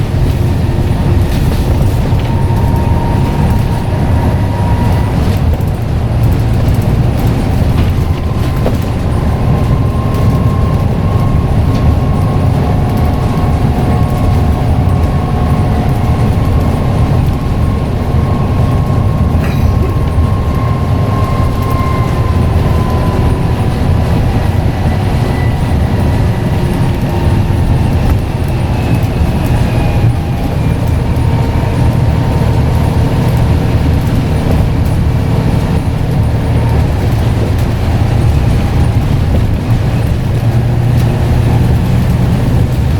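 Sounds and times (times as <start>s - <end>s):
bus engine and road rumble: 0.0s - 42.9s
high whine: 0.0s - 42.9s.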